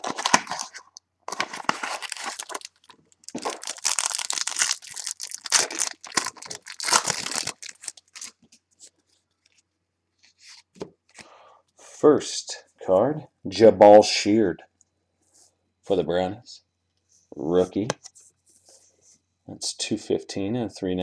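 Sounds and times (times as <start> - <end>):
packaging ripping and rustling: 0.0 - 8.5.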